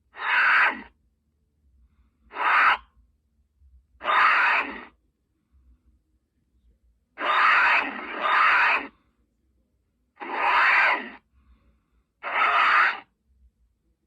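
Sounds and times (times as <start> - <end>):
harsh breathy creature calls: 0.1 - 0.9, 2.3 - 2.9, 4.0 - 4.9, 7.2 - 9.0, 10.2 - 11.2, 12.2 - 13.1.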